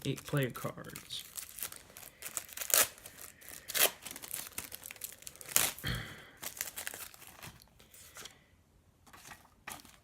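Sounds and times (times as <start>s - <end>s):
foil wrapper tearing and crinkling: 0.0s - 7.6s.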